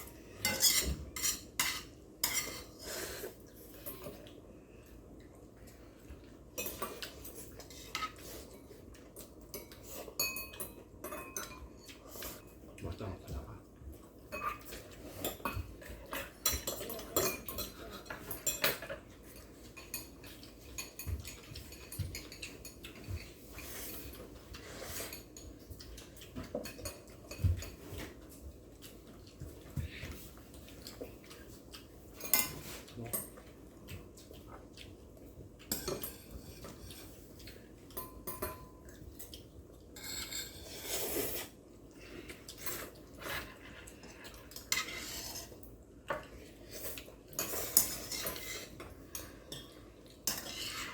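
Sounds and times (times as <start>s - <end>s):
utensils clinking on bowls: 0.4s - 2.8s, 6.6s - 8.4s, 9.4s - 12.7s, 14.3s - 28.2s, 32.1s - 33.5s, 35.6s - 39.4s, 40.0s - 41.5s, 42.5s - 50.9s
slurping and chewing noodles: 38.9s - 50.9s.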